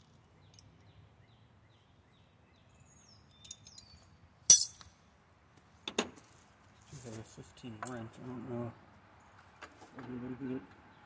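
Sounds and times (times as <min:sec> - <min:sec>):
metal wrenches clinking: 0:04.5 - 0:04.8.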